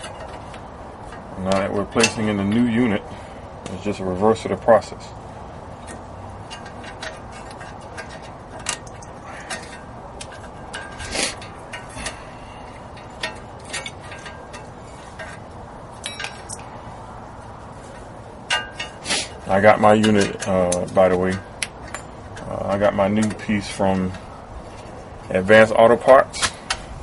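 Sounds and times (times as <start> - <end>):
metallic clicks and clinks: 16.0 - 16.7.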